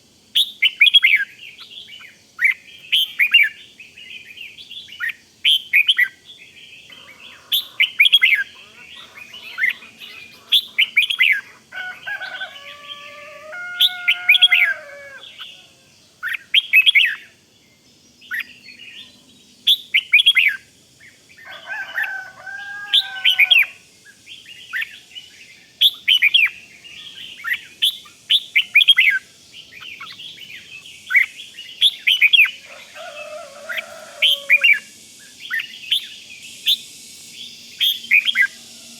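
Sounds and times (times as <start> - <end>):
birds chirping and warbling: 0.0 - 38.9.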